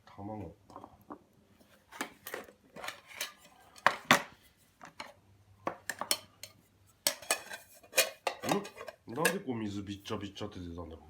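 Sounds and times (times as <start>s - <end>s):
metal cookware clinking: 2.2s - 4.2s, 5.7s - 9.5s.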